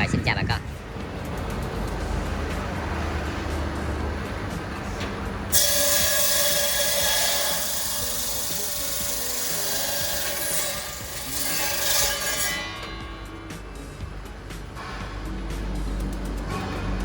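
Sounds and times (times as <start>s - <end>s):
ice-cutting machine whining: 5.5s - 12.8s.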